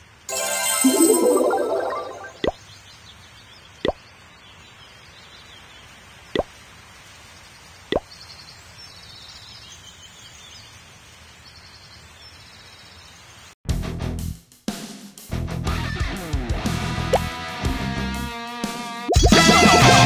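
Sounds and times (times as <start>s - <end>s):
upward sweeping plops: 0.3s - 2.6s.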